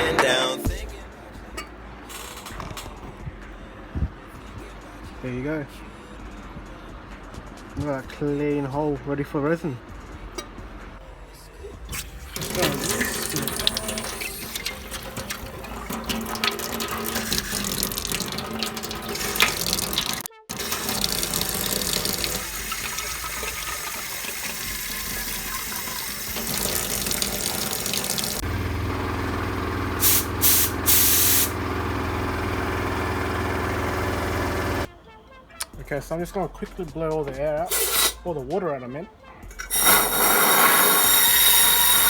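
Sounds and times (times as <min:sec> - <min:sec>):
tap water running: 0:12.1 - 0:34.9, 0:37.7 - 0:38.2, 0:39.6 - 0:42.0
short loud hisses: 0:37.7 - 0:38.2, 0:39.7 - 0:42.0.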